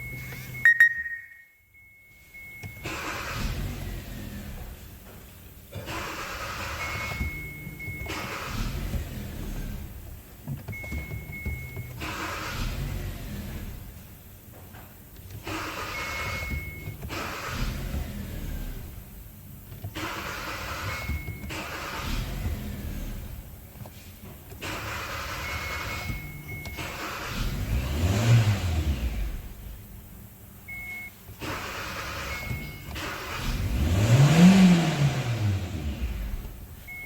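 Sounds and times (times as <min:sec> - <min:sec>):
short high beeps: 0:00.0 - 0:02.1
car engine cranking: 0:02.4 - 0:37.0.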